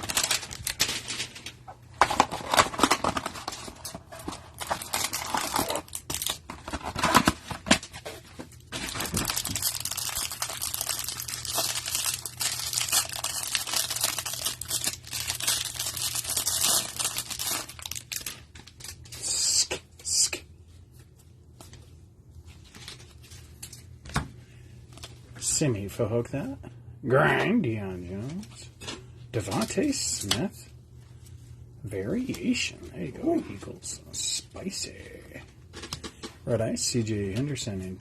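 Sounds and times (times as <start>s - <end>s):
packaging torn and crinkled: 0.0s - 7.9s, 8.5s - 19.2s.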